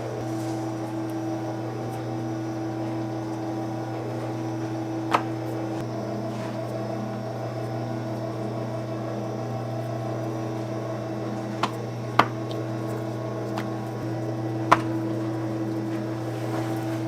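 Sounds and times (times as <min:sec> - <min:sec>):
mechanical hum of kitchen equipment: 0:00.0 - 0:17.0.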